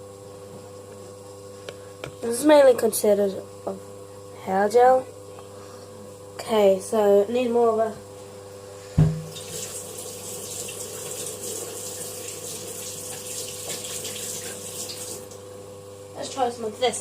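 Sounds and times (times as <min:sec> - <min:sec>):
thump: 0:09.0 - 0:09.3
water running from a tap: 0:09.1 - 0:15.5.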